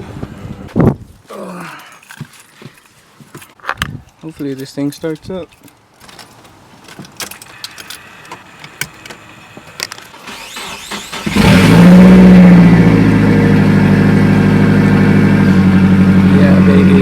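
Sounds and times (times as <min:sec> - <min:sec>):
car engine cranking and idling: 0:08.3 - 0:17.0.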